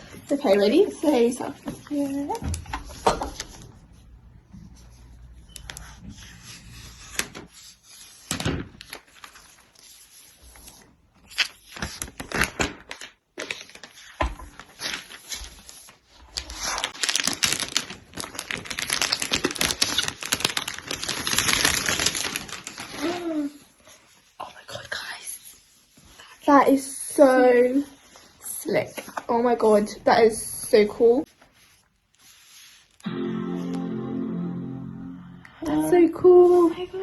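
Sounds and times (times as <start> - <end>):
plastic wrapping crinkling: 8.3 - 9.8, 11.2 - 23.6.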